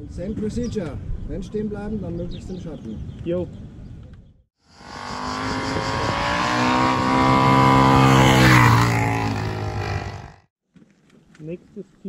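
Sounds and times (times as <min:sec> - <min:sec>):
motorcycle engine passing: 0:04.7 - 0:10.5.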